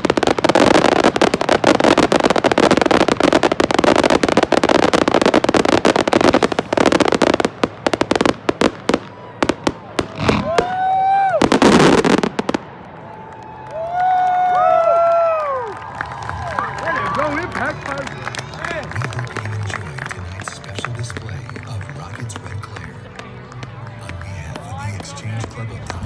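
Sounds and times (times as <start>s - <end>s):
fireworks bangs and crackling: 0.0s - 13.2s, 14.0s - 26.0s
spectators whooping: 10.0s - 25.3s.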